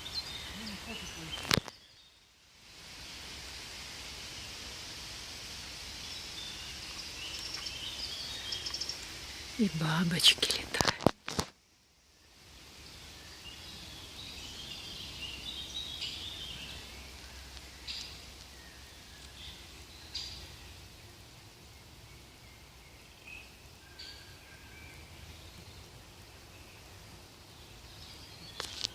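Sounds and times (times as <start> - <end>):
songbirds singing: 0.0 - 2.4, 5.8 - 11.1, 11.9 - 28.9.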